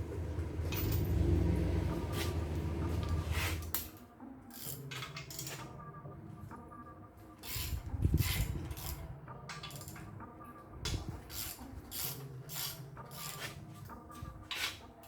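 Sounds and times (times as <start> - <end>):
hand tools clinking on metal: 0.6 - 1.6, 4.5 - 5.7, 7.4 - 10.1.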